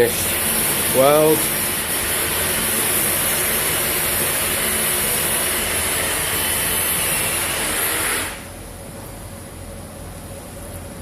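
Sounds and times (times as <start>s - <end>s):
loud rushing hiss: 0.0s - 8.6s.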